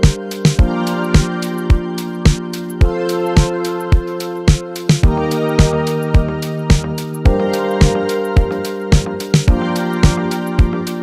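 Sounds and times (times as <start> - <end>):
music with sustained chords and beat: 0.0 - 11.0.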